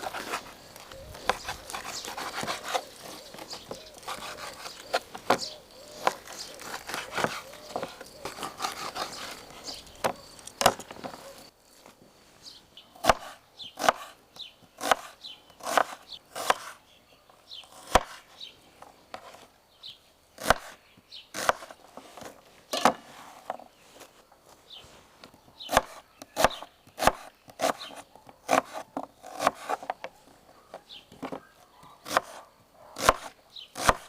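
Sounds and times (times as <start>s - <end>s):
chopping on wood: 10.0s - 11.2s, 13.0s - 14.1s, 14.8s - 16.7s, 17.7s - 18.2s, 20.4s - 20.8s, 21.4s - 21.8s, 25.7s - 30.2s, 32.0s - 32.4s, 33.0s - 34.0s.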